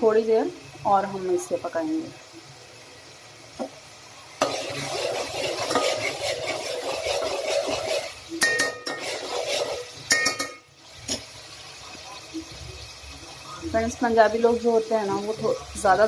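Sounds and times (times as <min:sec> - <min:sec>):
faint sizzle: 0:00.0 - 0:16.0
metal spoon scraping pan: 0:04.4 - 0:11.3
spoon clinking against pan: 0:08.3 - 0:09.1, 0:10.1 - 0:11.2.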